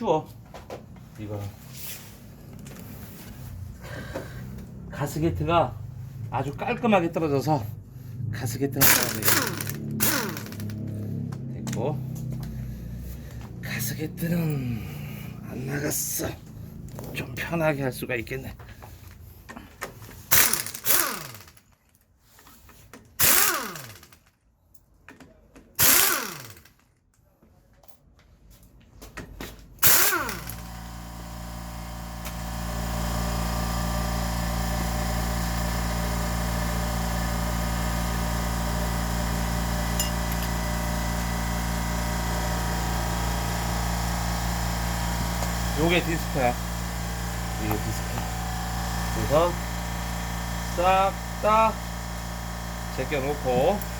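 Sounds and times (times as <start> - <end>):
steady machine drone: 7.4 - 18.0, 20.3 - 21.5, 29.8 - 53.9
power tool spinning down: 8.8 - 11.4, 20.3 - 21.6, 23.2 - 24.2, 25.8 - 26.7, 29.8 - 53.9.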